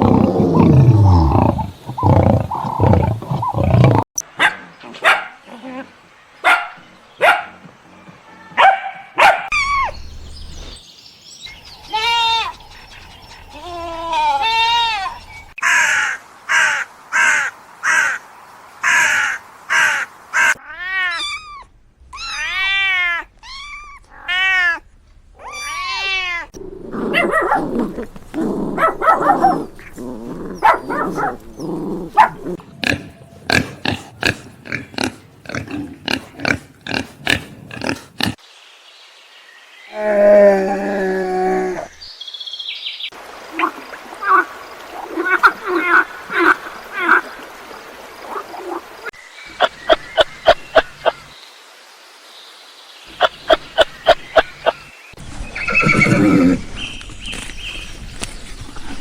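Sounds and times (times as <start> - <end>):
low rough grunting: 29.9 - 38.4.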